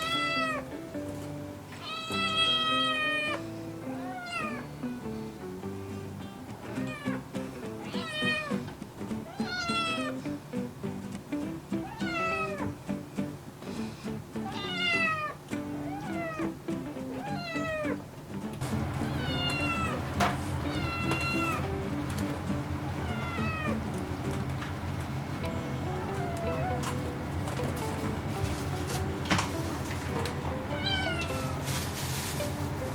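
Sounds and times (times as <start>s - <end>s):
kitten meowing: 0.0s - 0.7s, 1.8s - 4.6s, 6.7s - 7.2s, 7.8s - 8.6s, 9.2s - 10.2s, 11.8s - 12.7s, 14.4s - 16.6s, 19.0s - 20.0s, 20.6s - 21.6s, 22.9s - 23.8s, 30.7s - 31.5s.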